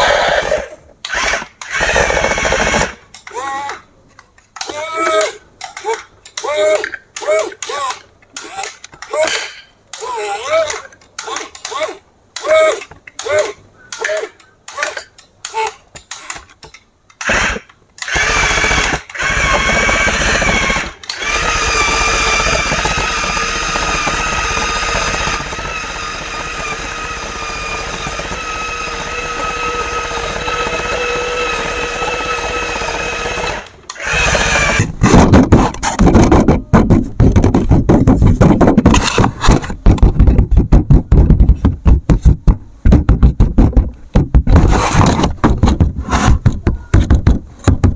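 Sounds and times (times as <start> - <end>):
toy electric motor whining: 0.0 - 3.8, 17.2 - 34.9.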